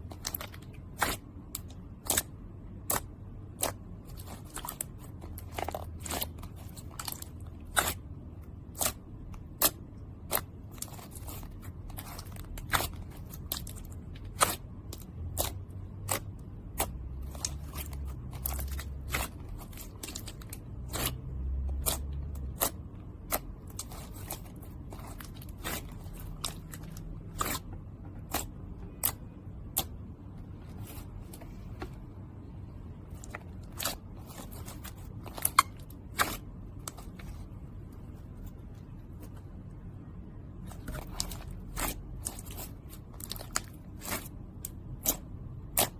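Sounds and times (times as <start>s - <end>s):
slime clicking and popping: 41.1s - 45.9s.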